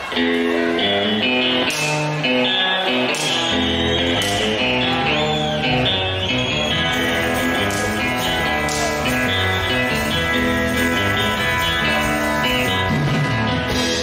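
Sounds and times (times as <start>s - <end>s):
electric guitars: 0.0s - 14.0s
live rock band playing: 0.0s - 14.0s.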